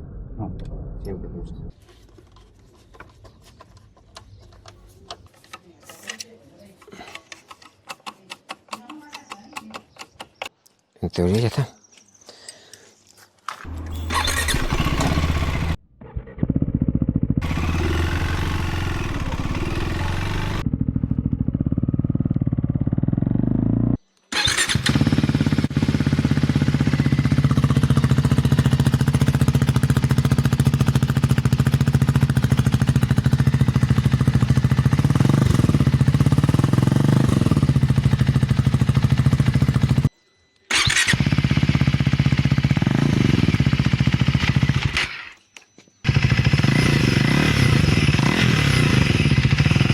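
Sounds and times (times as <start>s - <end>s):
motorcycle engine idling: 13.7s - 15.8s, 16.5s - 23.8s, 24.4s - 40.1s, 40.7s - 44.8s, 46.0s - 49.9s.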